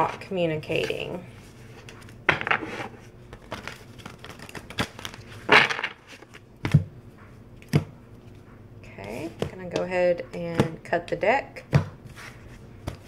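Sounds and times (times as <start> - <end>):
cards rustling while shuffled: 0.8 - 6.5.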